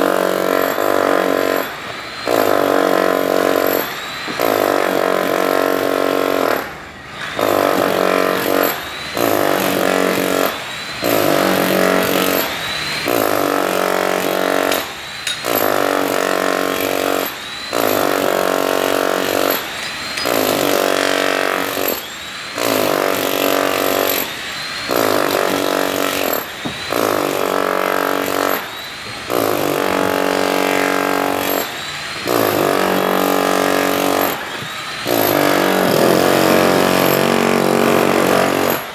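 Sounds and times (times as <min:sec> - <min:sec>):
power drill whining: 0:00.0 - 0:38.9.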